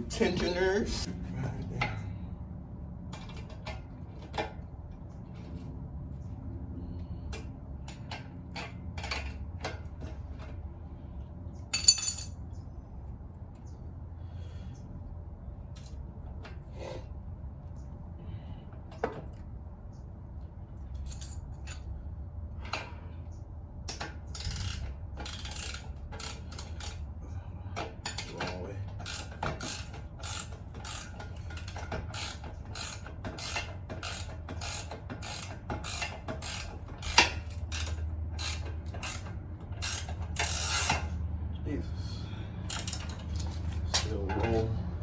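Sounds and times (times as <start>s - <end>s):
ratchet wrench clicking: 23.9s - 27.0s, 29.0s - 41.1s, 42.7s - 44.0s.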